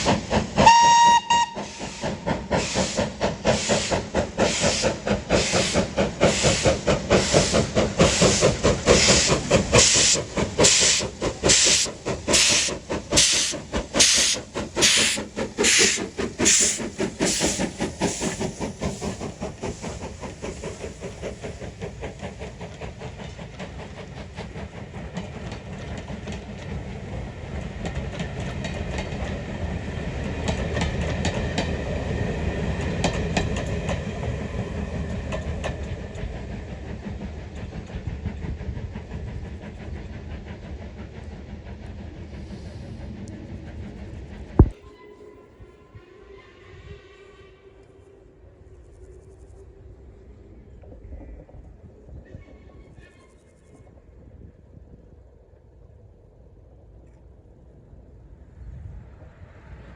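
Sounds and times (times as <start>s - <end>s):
steam locomotive exhaust beats: 0.0s - 55.2s
train rumble and rail clicks: 0.0s - 59.9s.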